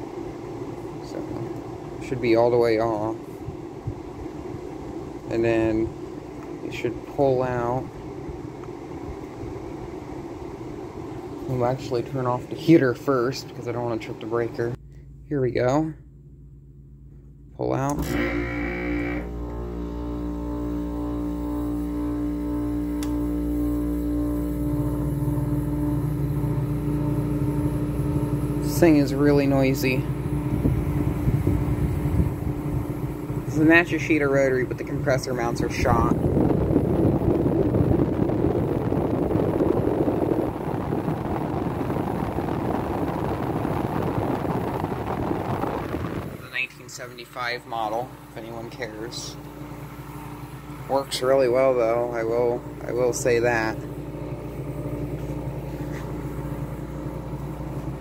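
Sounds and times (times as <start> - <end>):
air conditioner humming: 0.0 - 58.0
brief high whine: 17.8 - 26.2.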